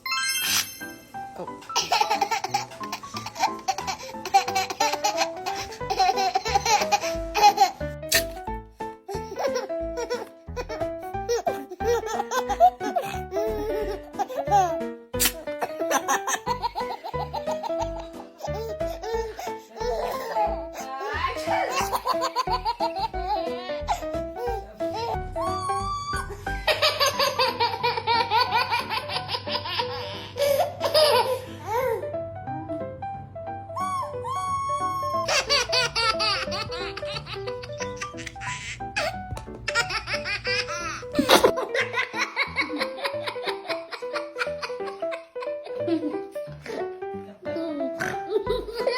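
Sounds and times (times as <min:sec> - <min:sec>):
background music: 0:00.0 - 0:48.9
baby laughing: 0:01.4 - 0:08.4, 0:09.1 - 0:32.0, 0:33.8 - 0:48.9
background music with bass: 0:21.2 - 0:26.9.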